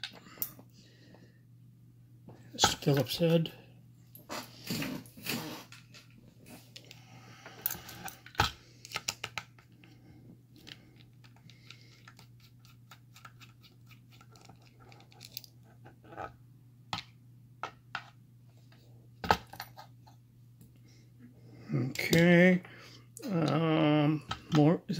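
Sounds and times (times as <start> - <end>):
faint low hum: 0.0 - 24.9.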